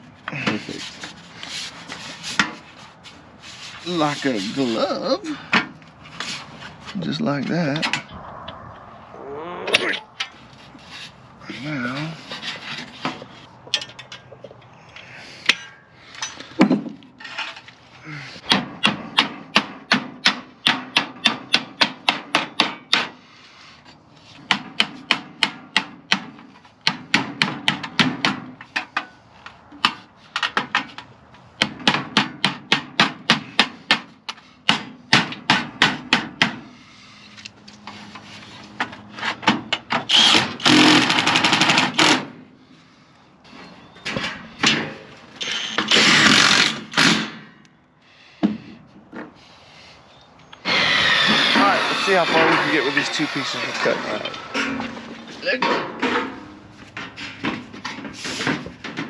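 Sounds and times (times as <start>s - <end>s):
loud noisy burst: 50.6s - 54.5s.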